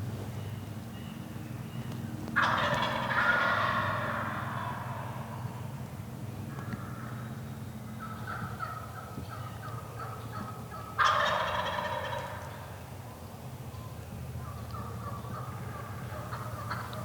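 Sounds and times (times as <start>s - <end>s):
turkey yelps: 2.4s - 5.2s, 8.0s - 12.4s, 14.4s - 17.0s
turkey gobbling: 2.4s - 5.3s, 8.0s - 12.7s, 14.4s - 17.0s.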